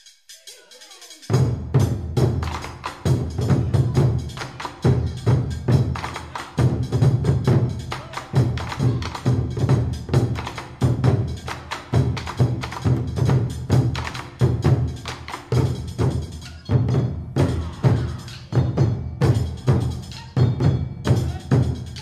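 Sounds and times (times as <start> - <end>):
sharp clicking percussion: 0.0 - 22.0
heavy low drum pulse: 3.0 - 6.0.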